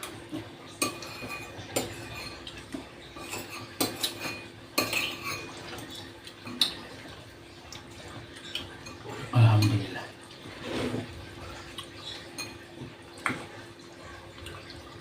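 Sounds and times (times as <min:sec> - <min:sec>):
cutlery clinking on a plate: 0:00.0 - 0:06.8.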